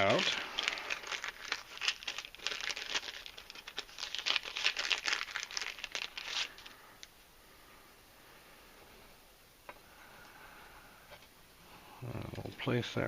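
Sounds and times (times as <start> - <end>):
plastic packaging crinkling: 0.0 - 7.1.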